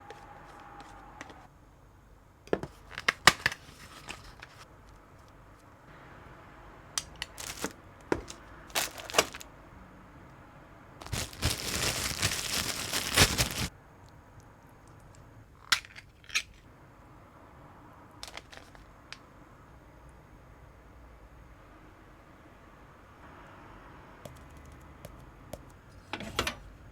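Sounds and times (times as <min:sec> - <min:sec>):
crinkling tearing noise: 0:07.2 - 0:09.5, 0:11.0 - 0:13.7, 0:18.2 - 0:18.8.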